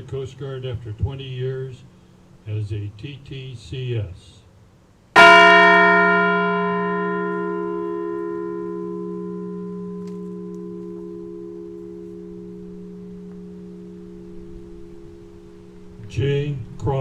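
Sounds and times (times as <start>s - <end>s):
large bell tolling: 5.2s - 17.0s.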